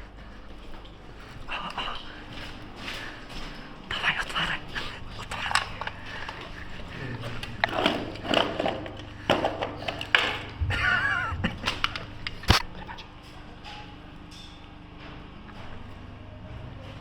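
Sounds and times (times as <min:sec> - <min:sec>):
knocks and clatter of movement: 0:05.1 - 0:12.6.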